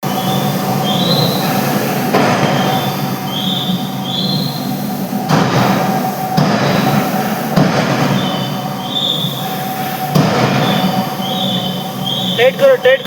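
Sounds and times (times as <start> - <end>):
heavy machinery humming: 0.0 - 13.0
high metallic squeal: 8.2 - 13.0.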